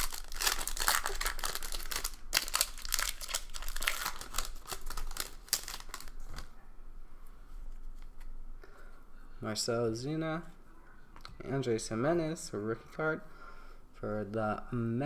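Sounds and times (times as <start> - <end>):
wrapper tearing and crinkling: 0.0 - 6.5.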